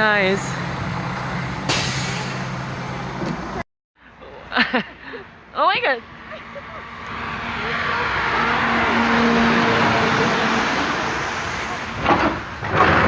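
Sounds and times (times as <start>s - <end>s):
car passing by: 6.3s - 13.0s.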